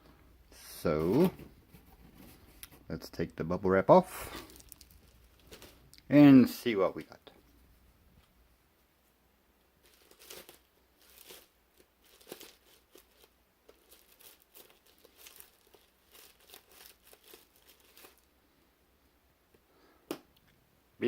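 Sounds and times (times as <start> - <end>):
bubble wrap crinkling: 4.1 - 7.2, 9.8 - 18.4.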